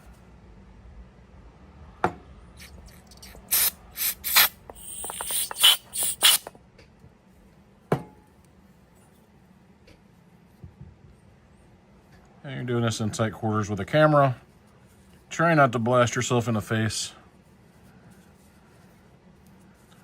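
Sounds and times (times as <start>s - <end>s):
hissing spray bursts: 2.6s - 6.5s.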